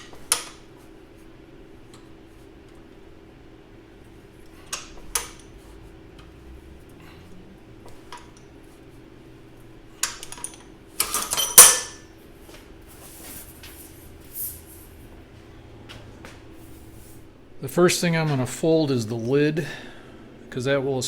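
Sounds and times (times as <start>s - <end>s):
metal clanks and clinks: 10.0s - 12.1s.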